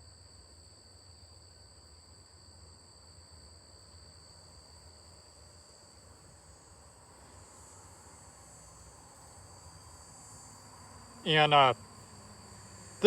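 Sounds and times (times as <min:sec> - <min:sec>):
crickets trilling: 0:02.8 - 0:13.0.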